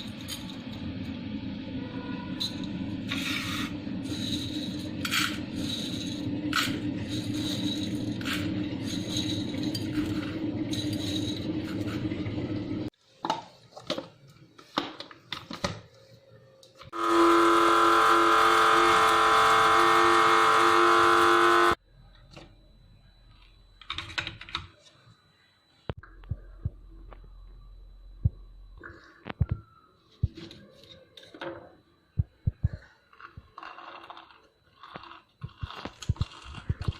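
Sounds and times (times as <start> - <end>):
kitchen utensils clinking: 2.4 - 12.3
kitchen appliance motor humming: 16.9 - 21.8, 32.6 - 36.9.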